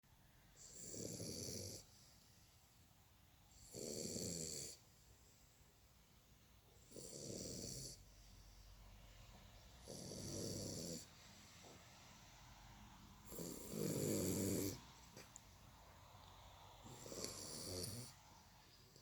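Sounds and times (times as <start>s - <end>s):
puppy snoring: 0.6s - 2.0s, 3.5s - 4.9s, 6.8s - 8.1s, 9.8s - 11.2s, 13.2s - 15.0s, 16.8s - 18.3s.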